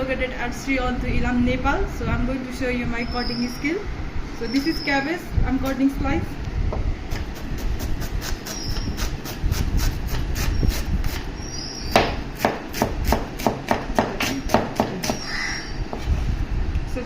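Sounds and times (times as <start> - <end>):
knife chopping cabbage on board: 11.9 - 15.2.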